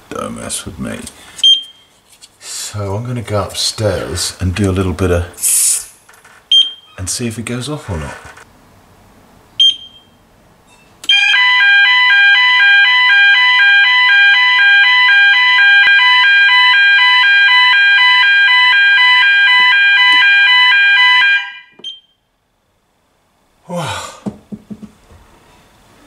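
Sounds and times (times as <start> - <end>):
fire alarm stepping tones: 6.5 - 6.9, 9.6 - 10.1, 11.1 - 22.2.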